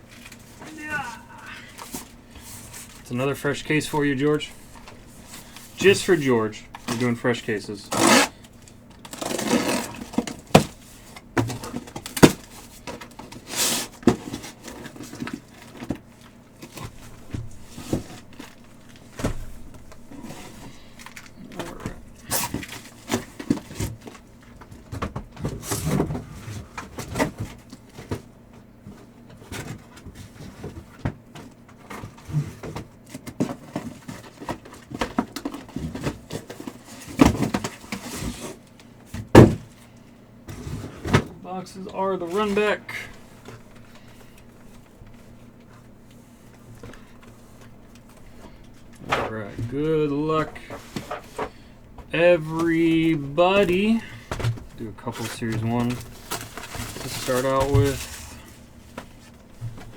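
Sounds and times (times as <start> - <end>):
cardboard and plastic wrap handled: 0.1 - 28.3, 40.5 - 59.9.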